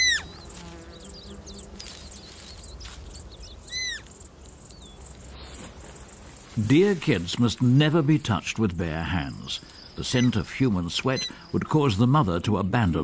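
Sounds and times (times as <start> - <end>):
deer fawn bleating: 0.0 - 0.3, 10.0 - 11.4.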